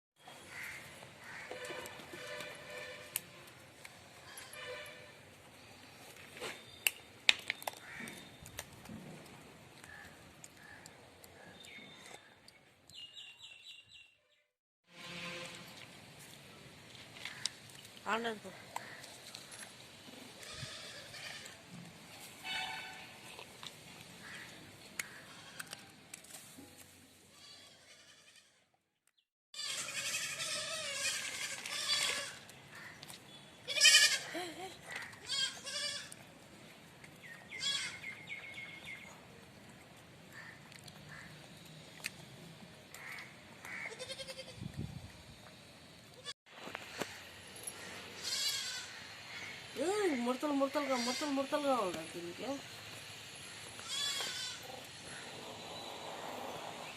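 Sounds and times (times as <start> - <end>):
wavering bleat-like animal cry: 48.2 - 49.0.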